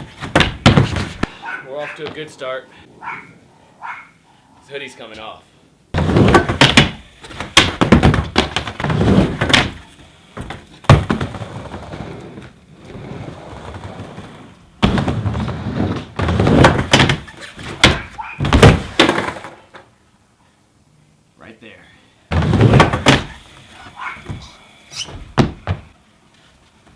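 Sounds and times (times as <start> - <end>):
skateboard clacks and thuds: 0.0 - 1.4, 6.0 - 12.6, 13.2 - 19.9, 22.3 - 26.0
skateboard wheels rolling on ramp: 0.0 - 1.4, 6.0 - 20.0, 22.3 - 26.0.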